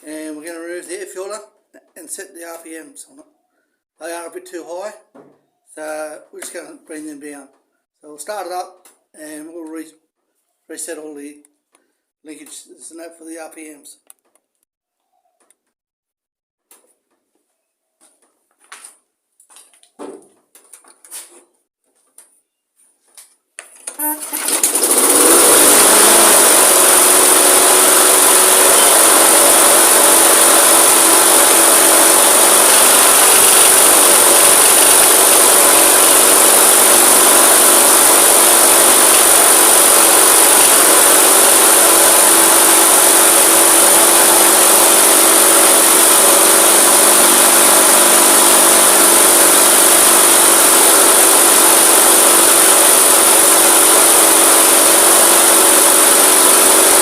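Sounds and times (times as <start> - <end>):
lawn mower engine running: 24.0 - 57.0.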